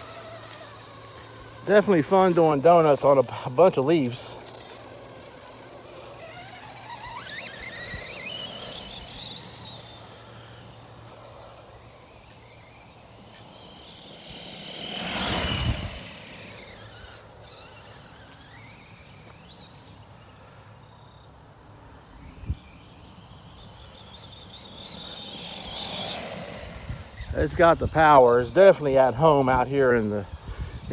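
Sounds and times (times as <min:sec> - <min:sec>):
electric motor whining: 0:00.0 - 0:20.4, 0:22.1 - 0:30.9.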